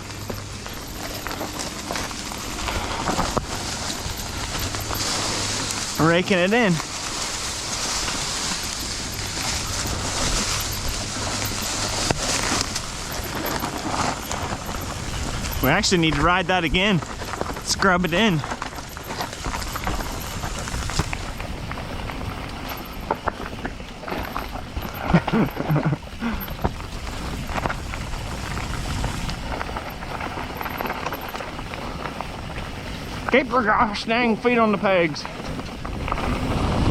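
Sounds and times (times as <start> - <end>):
bike tyres on dirt trail: 0.0 - 36.9
wind: 0.0 - 36.9
rider vocal sound: 9.2 - 20.8.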